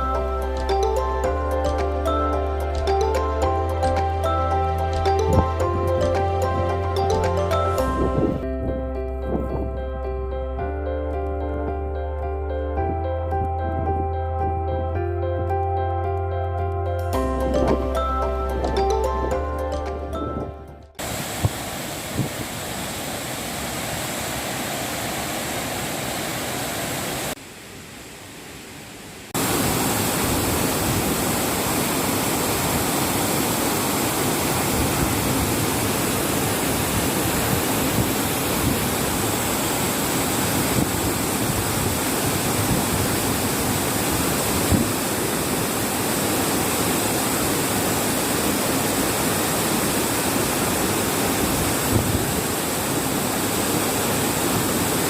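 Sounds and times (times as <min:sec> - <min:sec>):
waterfall rushing: 0:00.0 - 0:08.4, 0:21.0 - 0:27.4, 0:29.3 - 0:55.0.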